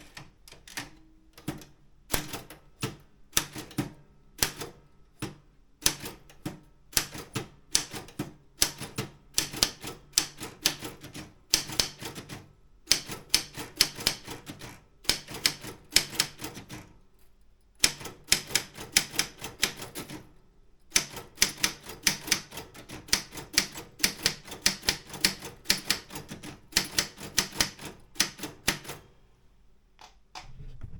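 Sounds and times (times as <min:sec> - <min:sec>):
typewriter key clacks: 0:07.0 - 0:16.8, 0:20.9 - 0:29.0.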